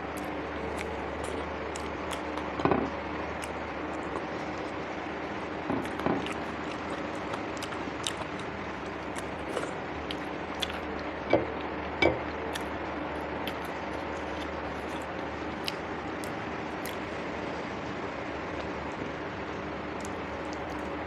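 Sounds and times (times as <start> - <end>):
wet chewing: 0.0 - 4.3, 5.7 - 17.1, 20.0 - 21.0
steady background hum: 0.0 - 21.0.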